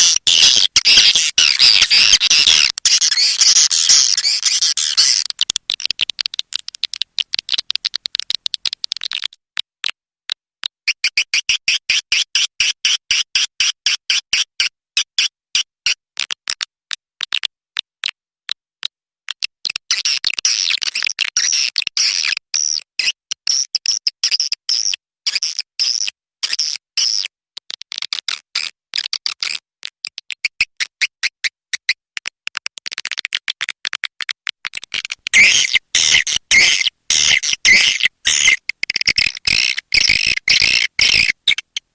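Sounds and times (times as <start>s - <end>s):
swiftlet twittering chirps: 0.0s - 7.0s, 35.0s - 41.8s.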